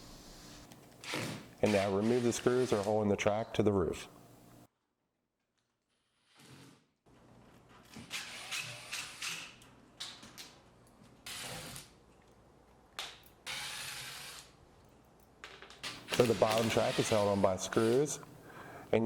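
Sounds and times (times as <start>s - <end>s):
screwdriver whirring and ratcheting: 7.4s - 10.6s, 11.2s - 12.0s, 13.0s - 14.6s, 15.8s - 18.1s.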